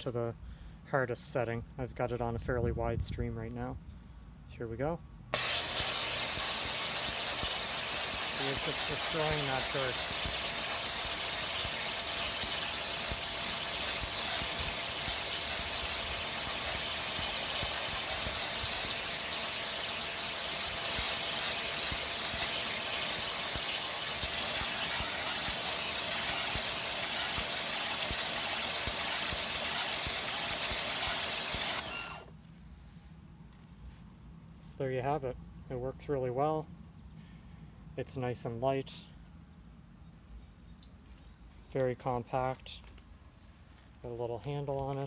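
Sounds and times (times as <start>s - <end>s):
pressure washer spraying water: 5.4s - 32.2s.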